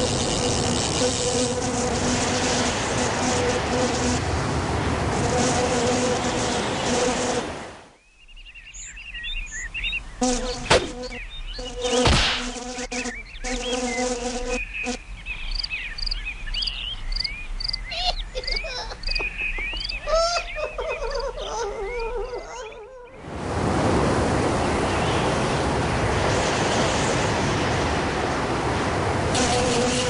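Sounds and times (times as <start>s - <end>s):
insect-like buzzing: 0.0s - 4.3s, 5.1s - 7.6s, 10.2s - 15.0s, 29.3s - 30.0s
high twittering chirps: 12.9s - 22.2s.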